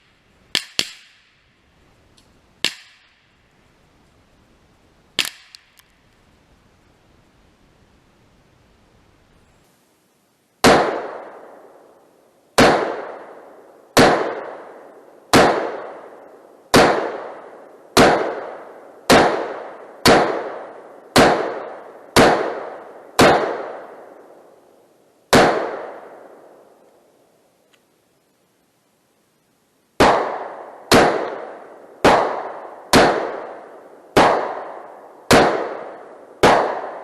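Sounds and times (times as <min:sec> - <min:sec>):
gunshots with ringing echo: 0:10.6 - 0:11.6, 0:12.6 - 0:24.2, 0:25.3 - 0:26.5, 0:30.0 - 0:37.0.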